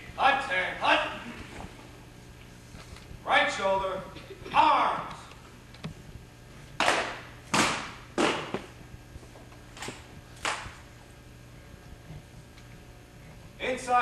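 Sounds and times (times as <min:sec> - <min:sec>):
hands slapping wooden rifle stocks: 0:09.8 - 0:10.8.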